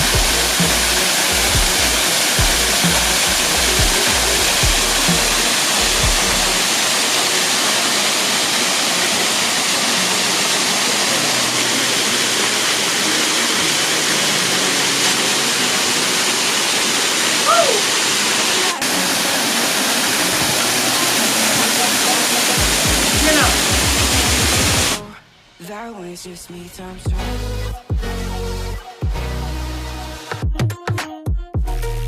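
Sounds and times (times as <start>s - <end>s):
background music with low beat: 0.0s - 6.6s, 22.6s - 25.0s, 26.8s - 32.0s
waterfall rushing: 0.0s - 25.1s.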